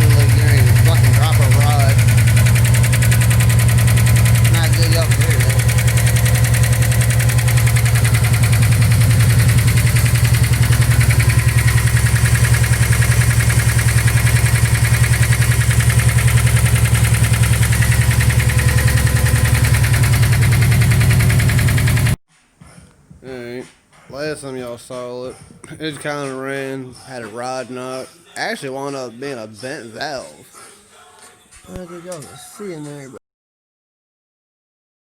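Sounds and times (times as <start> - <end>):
car engine running with rapid knock: 0.0 - 22.2.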